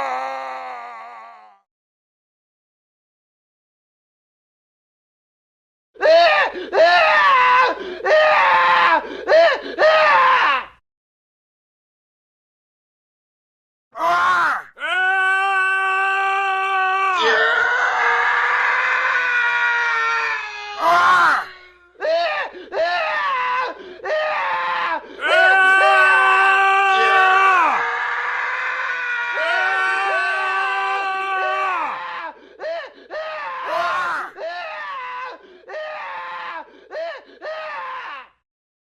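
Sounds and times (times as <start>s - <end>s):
man screaming: 6.0s - 10.8s, 14.0s - 32.4s, 33.1s - 38.4s.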